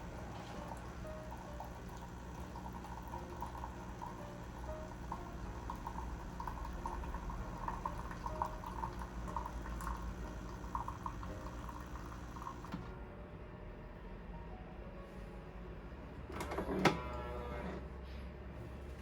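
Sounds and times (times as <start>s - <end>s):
gurgling drips into cup: 0.0s - 12.7s
coffee machine humming: 0.0s - 13.0s, 16.2s - 17.9s.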